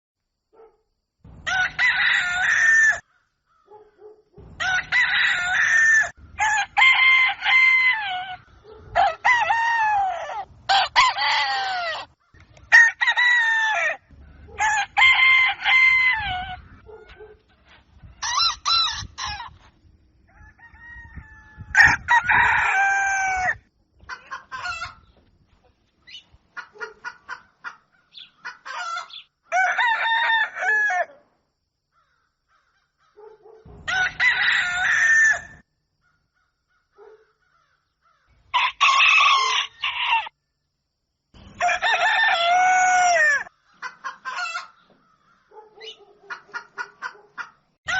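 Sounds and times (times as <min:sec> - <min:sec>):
roosters crowing: 0:01.3 - 0:03.8, 0:04.4 - 0:25.2, 0:26.6 - 0:31.2, 0:32.6 - 0:35.7, 0:37.4 - 0:40.4, 0:41.4 - 0:47.9
chicken clucking: 0:24.0 - 0:29.3, 0:43.5 - 0:47.7.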